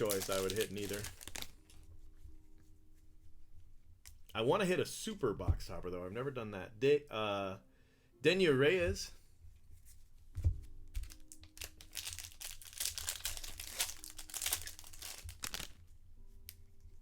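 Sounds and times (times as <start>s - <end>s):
cards rustling: 0.0s - 1.8s, 11.0s - 15.8s
foil wrapper crinkling: 0.0s - 1.8s, 10.9s - 15.9s.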